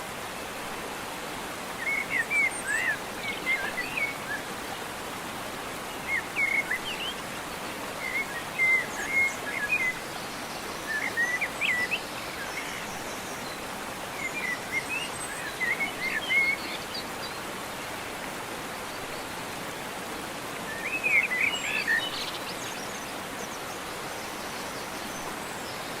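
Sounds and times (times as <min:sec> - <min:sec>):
outdoor background hiss: 0:00.0 - 0:26.0
songbird singing: 0:01.8 - 0:04.6, 0:05.9 - 0:17.4, 0:20.6 - 0:26.0.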